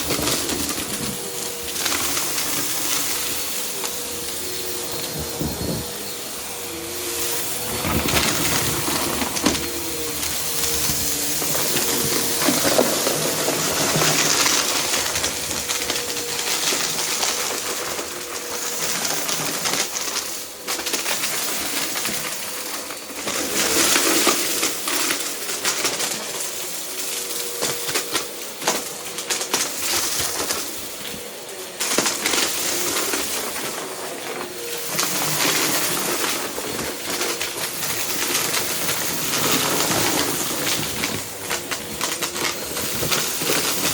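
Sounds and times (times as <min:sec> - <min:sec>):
vacuum cleaner running: 0:00.0 - 0:43.9
debris clicking and rattling: 0:31.8 - 0:43.9.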